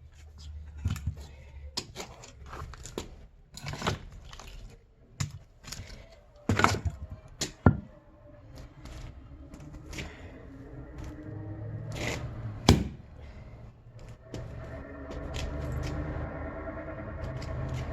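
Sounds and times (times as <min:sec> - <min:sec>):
axe chopping firewood: 0:12.7 - 0:13.0.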